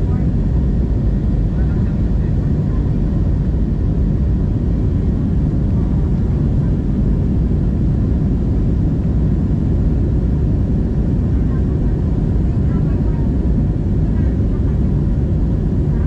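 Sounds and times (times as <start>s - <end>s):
jet engines rumbling in cabin: 0.0s - 16.0s.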